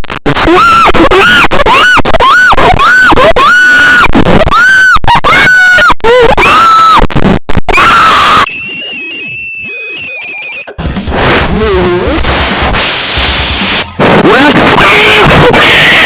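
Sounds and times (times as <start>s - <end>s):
distorted alarm wails: 7.7s - 11.4s
thin wavering high tone: 8.5s - 10.5s.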